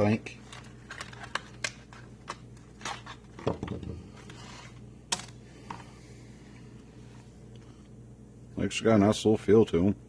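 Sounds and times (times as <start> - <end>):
screwdrivers and packaging clicking: 0.4 - 3.9.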